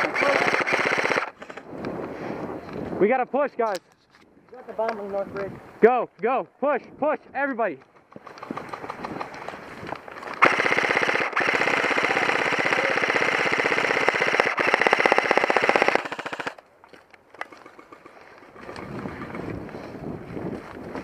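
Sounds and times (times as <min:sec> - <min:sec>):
airsoft rifle firing bursts: 0:00.0 - 0:01.4, 0:10.4 - 0:16.6.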